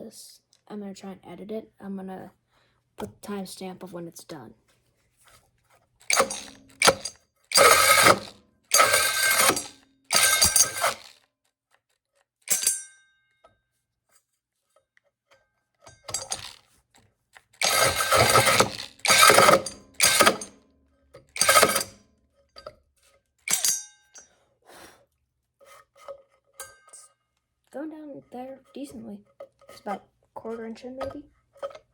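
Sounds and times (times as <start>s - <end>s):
cordless drill cutting with hole saw: 6.0s - 11.2s, 16.2s - 16.6s, 17.6s - 20.5s, 21.4s - 22.0s.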